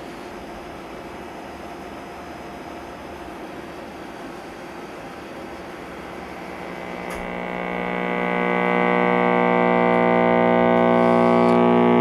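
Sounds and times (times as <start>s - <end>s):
radio speaker humming: 5.6s - 12.0s.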